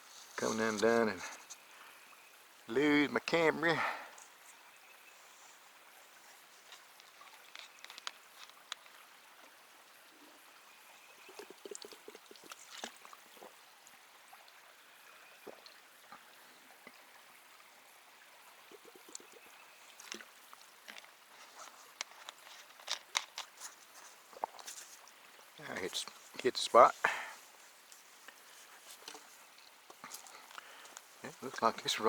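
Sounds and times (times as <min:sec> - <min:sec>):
gurgles and gulps of drinking: 0:11.2 - 0:13.6.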